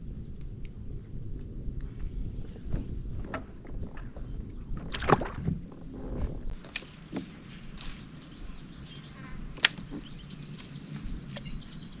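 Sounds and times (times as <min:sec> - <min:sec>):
faint birds calling: 0:05.7 - 0:12.0.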